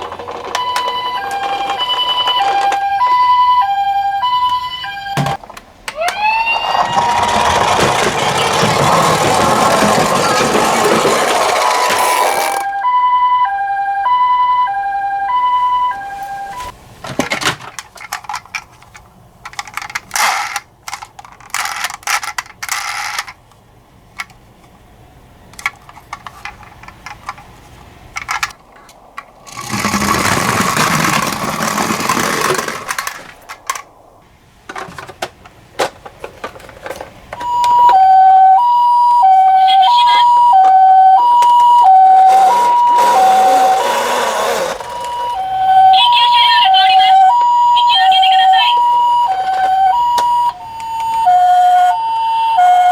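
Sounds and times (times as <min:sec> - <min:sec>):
two-tone ambulance siren: 0:00.0 - 0:16.7, 0:37.4 - 0:52.9
rushing noise: 0:28.6 - 0:34.6.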